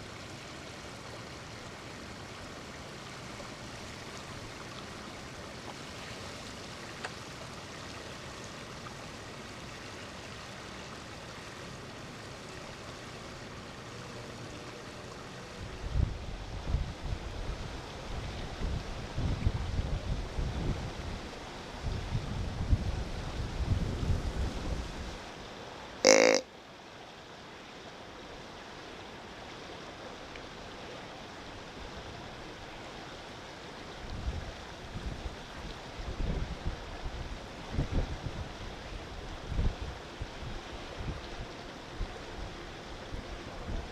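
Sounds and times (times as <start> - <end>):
wind hiss: 15.2 - 25.5, 30.6 - 43.9
wind gusts buffeting microphone: 15.7 - 25.2, 36.0 - 41.5.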